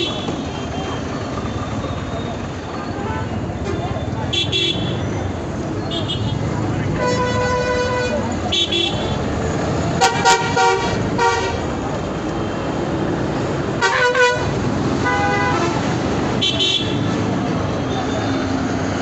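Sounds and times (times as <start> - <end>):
vehicle horns honking: 0.0 - 1.0, 2.8 - 5.2, 5.8 - 9.3, 9.9 - 11.7, 13.8 - 17.2
rumble of engines and road noise: 0.0 - 19.0.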